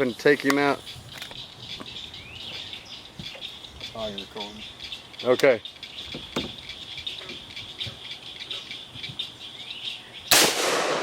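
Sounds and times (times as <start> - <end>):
insects chirping: 0.0 - 10.6
gunshot with echo: 10.3 - 11.0.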